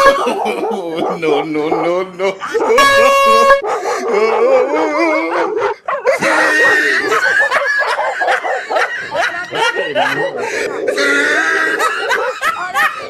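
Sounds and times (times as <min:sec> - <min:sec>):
air horn blast: 0:00.0 - 0:00.3, 0:02.8 - 0:03.6
dog yelping and howling: 0:00.0 - 0:13.0.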